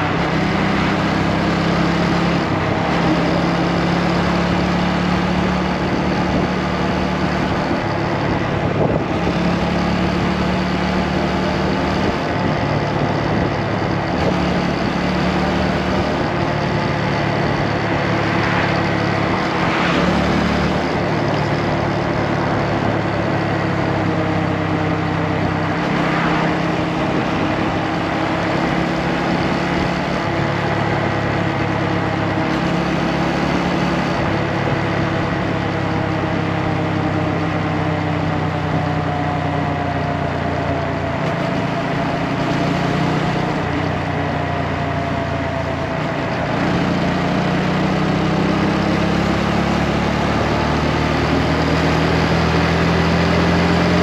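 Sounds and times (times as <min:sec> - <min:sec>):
motorcycle engine running: 0:00.0 - 0:54.0
wind noise: 0:05.6 - 0:10.0, 0:16.0 - 0:30.6.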